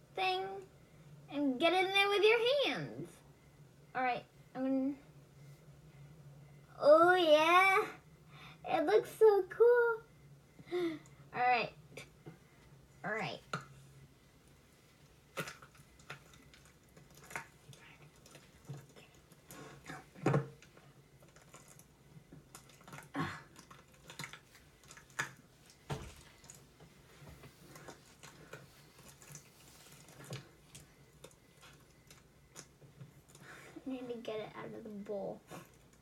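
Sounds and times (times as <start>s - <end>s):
slime squelching: 15.0s - 34.2s.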